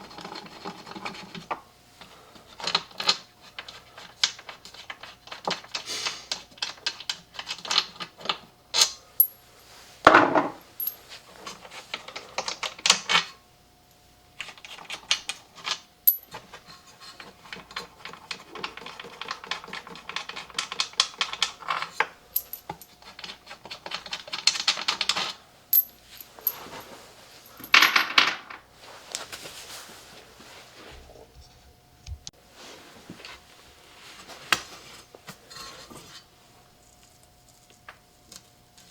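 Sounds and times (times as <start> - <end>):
small parts and tools clinking: 15.7 - 16.5, 17.5 - 28.6.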